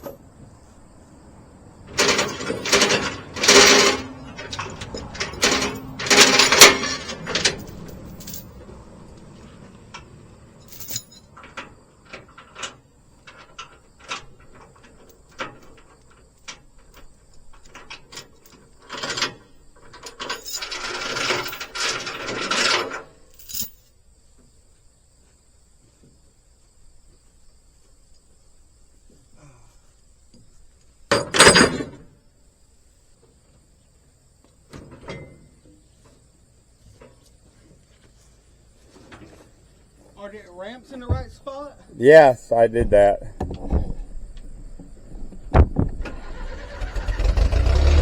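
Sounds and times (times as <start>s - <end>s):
metal chains clanking and rattling: 0.0s - 0.3s, 1.8s - 24.0s, 31.1s - 32.1s, 34.9s - 35.6s, 46.1s - 48.0s
metal clinks: 1.9s - 8.7s, 10.0s - 24.0s.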